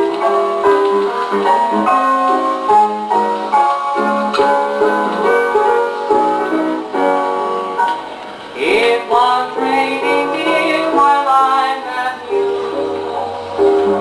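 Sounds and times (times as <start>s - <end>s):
old-time music from gramophone: 0.0s - 14.0s.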